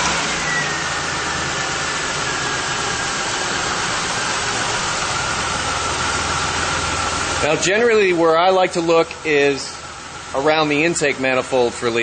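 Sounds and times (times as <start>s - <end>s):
car engine idling: 0.0s - 12.0s
faint high whistle: 0.4s - 1.5s.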